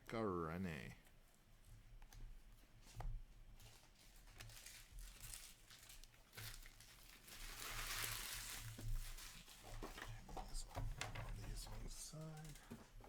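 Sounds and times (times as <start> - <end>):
wrappers crinkling and rustling: 2.6 - 13.0.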